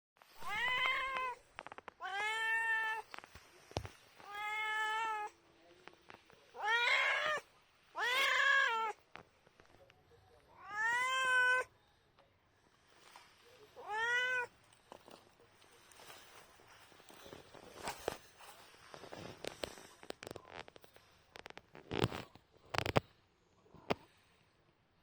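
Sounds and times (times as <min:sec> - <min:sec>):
cat meowing: 0:00.4 - 0:01.4, 0:02.0 - 0:03.1, 0:04.2 - 0:05.3, 0:06.6 - 0:09.0, 0:10.5 - 0:11.7, 0:13.8 - 0:14.5.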